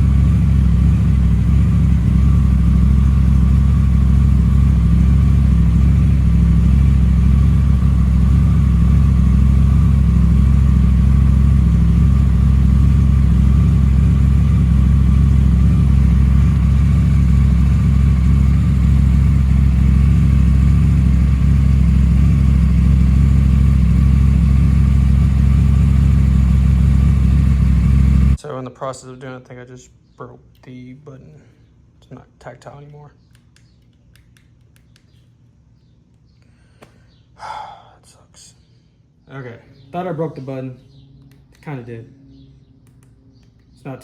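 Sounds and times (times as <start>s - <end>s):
motorcycle engine idling: 0.0s - 28.4s, 39.5s - 43.6s.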